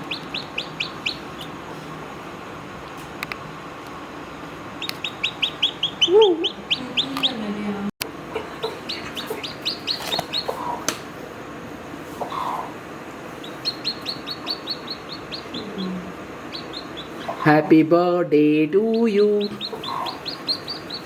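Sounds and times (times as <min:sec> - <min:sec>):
hen calling: 0:00.0 - 0:01.6, 0:04.8 - 0:07.6, 0:08.6 - 0:10.9, 0:12.2 - 0:12.8, 0:13.4 - 0:17.9, 0:18.8 - 0:21.0
chicks peeping: 0:00.0 - 0:02.1, 0:04.6 - 0:11.1, 0:12.0 - 0:17.9, 0:18.5 - 0:21.0.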